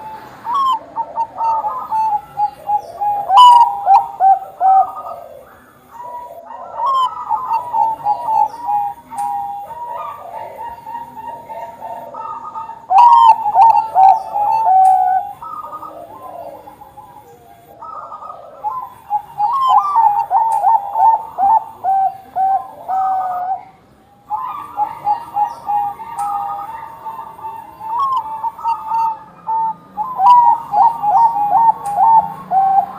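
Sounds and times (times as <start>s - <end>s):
dove cooing: 0.0s - 32.9s.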